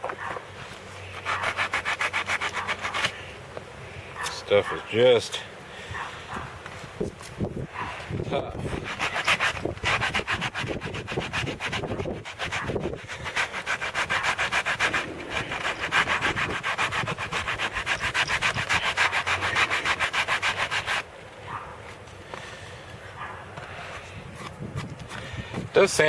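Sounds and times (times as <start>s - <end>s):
sanding sponge scraping strokes: 1.1s - 3.3s, 8.5s - 21.1s.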